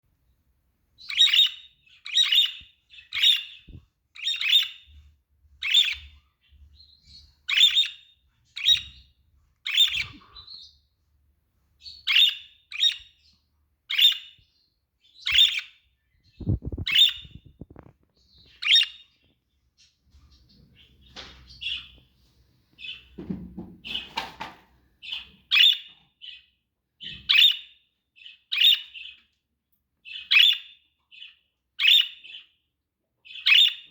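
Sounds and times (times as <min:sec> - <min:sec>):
budgerigars chirping: 0:01.0 - 0:10.8, 0:11.8 - 0:14.4, 0:15.0 - 0:19.2, 0:20.3 - 0:22.0, 0:22.8 - 0:23.2, 0:25.0 - 0:29.2, 0:30.0 - 0:32.6, 0:33.2 - 0:33.9.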